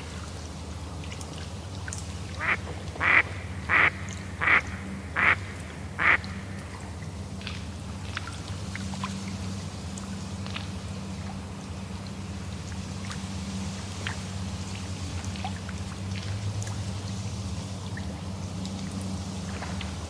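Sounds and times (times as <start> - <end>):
lake water lapping: 0.0 - 20.0
duck quacking: 2.4 - 6.4.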